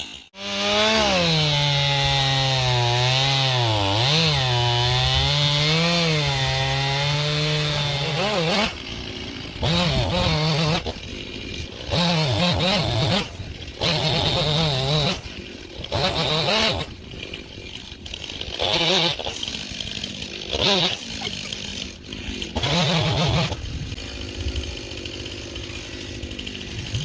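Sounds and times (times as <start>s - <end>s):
chainsaw cutting at high revs: 0.0s - 27.0s
chainsaw throttle bursts: 0.0s - 27.0s.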